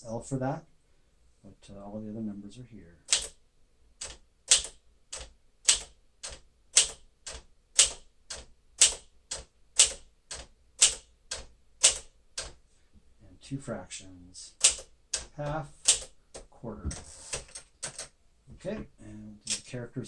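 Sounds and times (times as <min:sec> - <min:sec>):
manual typewriter typing: 0:03.1 - 0:03.4, 0:04.0 - 0:12.6, 0:14.6 - 0:18.2, 0:19.4 - 0:19.7.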